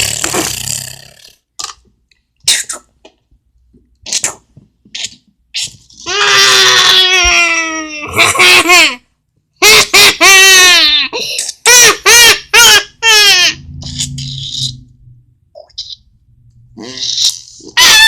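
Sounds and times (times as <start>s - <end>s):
child crying out: 6.1s - 8.2s.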